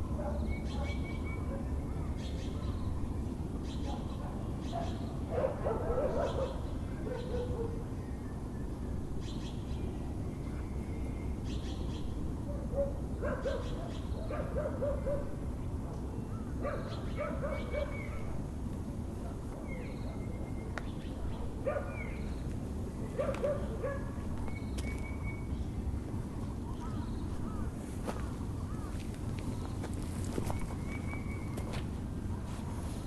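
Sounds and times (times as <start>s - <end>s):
birds chirping and calling: 0.0s - 8.4s, 9.2s - 15.3s, 15.9s - 18.4s, 19.3s - 25.8s, 26.5s - 33.0s
low background hum: 0.0s - 33.0s
dog barking: 0.2s - 1.7s, 3.9s - 7.8s, 12.5s - 15.4s, 16.6s - 18.3s, 21.3s - 22.0s, 23.2s - 24.2s.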